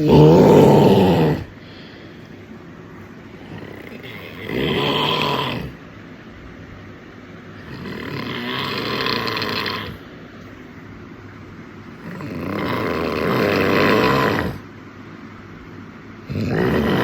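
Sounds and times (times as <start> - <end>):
man snoring: 0.0 - 1.6, 3.4 - 5.8, 7.6 - 10.0, 12.0 - 14.6, 16.3 - 17.0.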